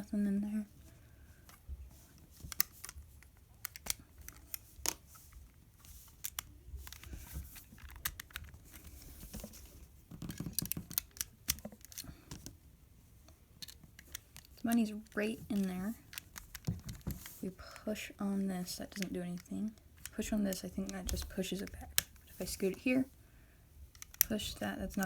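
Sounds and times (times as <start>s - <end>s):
plastic bricks clicking and clattering: 10.2s - 12.5s, 13.6s - 14.9s, 23.9s - 25.0s.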